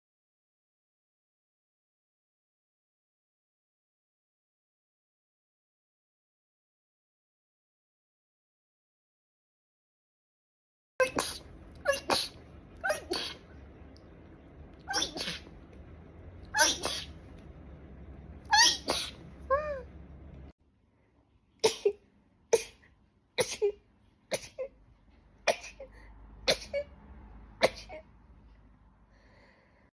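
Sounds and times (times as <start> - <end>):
person sneezing: 11.0 - 13.5, 14.9 - 15.5, 16.6 - 17.2, 18.6 - 19.2, 21.6 - 24.7, 25.5 - 26.9.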